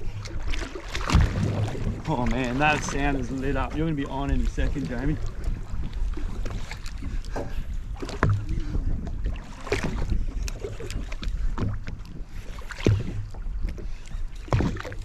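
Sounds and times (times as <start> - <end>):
wind and water around a boat: 0.0 - 15.0
knocks against boat: 7.4 - 8.8, 12.8 - 13.4.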